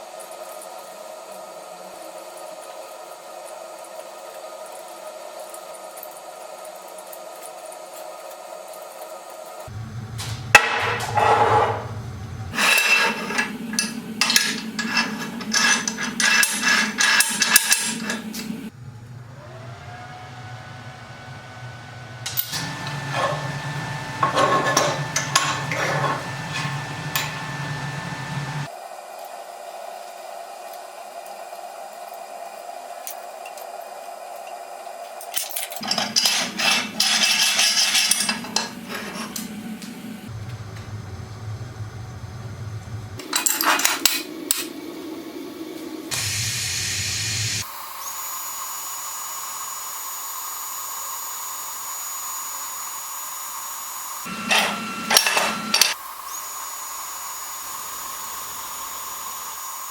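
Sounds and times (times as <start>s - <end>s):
steel parts clanking and scraping: 10.2s - 18.7s, 22.3s - 27.8s, 35.2s - 40.1s, 43.2s - 44.8s, 54.3s - 56.0s
electric power tool motor: 18.0s - 28.7s, 46.1s - 59.9s.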